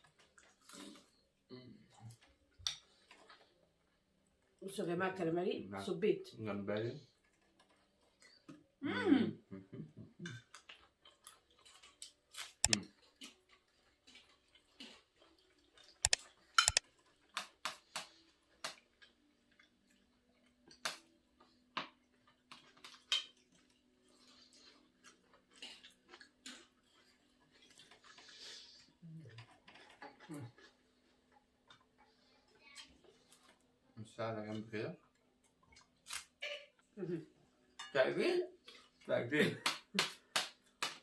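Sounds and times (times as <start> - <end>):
chewing: 0.0 - 4.6, 7.0 - 8.8, 10.1 - 33.9, 34.5 - 36.9
cutlery clicking on plates: 16.1 - 18.8.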